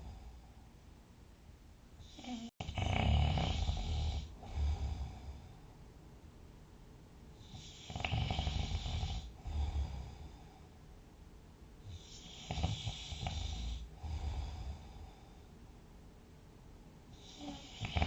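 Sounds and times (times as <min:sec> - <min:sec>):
lower snore: 0:02.0 - 0:05.6, 0:07.4 - 0:10.7, 0:11.9 - 0:15.3, 0:17.2 - 0:18.0
person snoring rattling: 0:02.1 - 0:05.4, 0:07.5 - 0:10.4, 0:11.9 - 0:15.0, 0:17.2 - 0:18.0.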